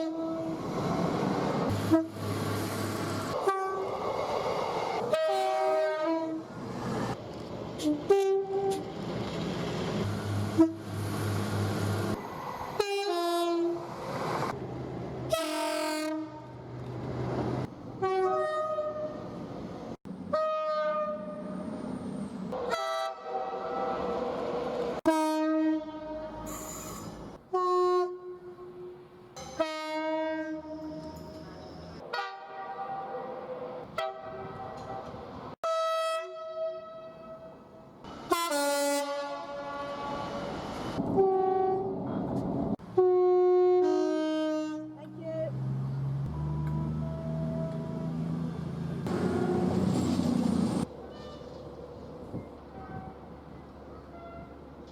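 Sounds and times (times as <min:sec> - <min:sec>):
train two-tone horn blasts: 0:01.7 - 0:02.4, 0:03.4 - 0:04.0, 0:05.1 - 0:06.5, 0:07.8 - 0:08.9, 0:10.5 - 0:11.0, 0:15.3 - 0:16.6, 0:18.0 - 0:19.2, 0:20.3 - 0:21.6, 0:22.6 - 0:24.2, 0:25.0 - 0:26.9, 0:27.5 - 0:31.5, 0:32.1 - 0:33.3, 0:34.0 - 0:37.6, 0:38.3 - 0:42.0, 0:42.9 - 0:45.1, 0:54.1 - 0:54.6.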